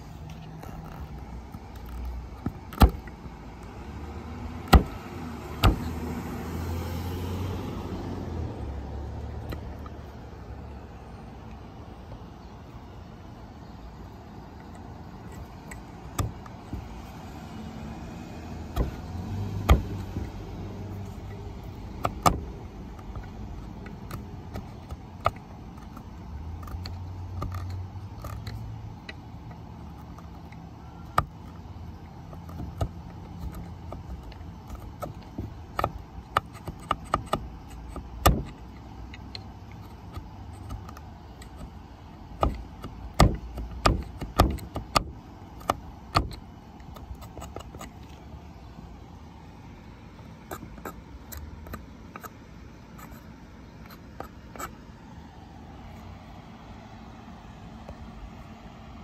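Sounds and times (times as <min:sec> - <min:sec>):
steady low hum: 0:00.0 - 0:59.0
hand tool chipping glue off wood: 0:04.4 - 0:06.5, 0:15.3 - 0:29.2, 0:29.8 - 0:48.2.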